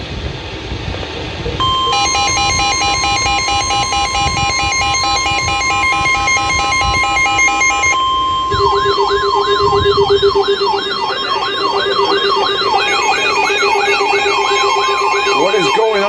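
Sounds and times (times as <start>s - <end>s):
pulsing lower tone: 1.6s - 16.0s
steady high alert tone: 1.6s - 16.0s
warbling tones: 1.6s - 16.0s
yelping siren tone: 1.6s - 16.0s.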